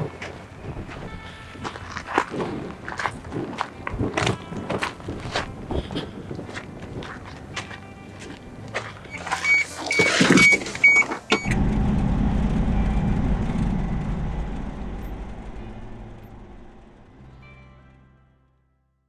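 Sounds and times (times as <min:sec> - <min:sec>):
car chime beeps: 0:09.1 - 0:11.7
low car rumble: 0:10.5 - 0:17.6
clatter: 0:11.4 - 0:17.2.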